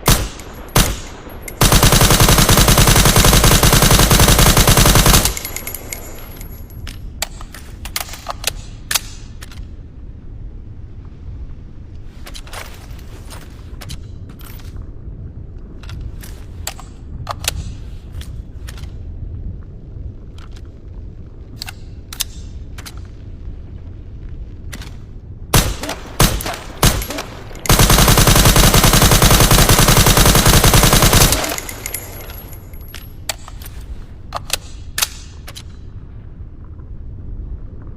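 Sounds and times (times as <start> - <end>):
automatic gunfire burst: 1.6 - 5.4, 25.6 - 32.2
sharp mechanical clicks: 25.6 - 33.7.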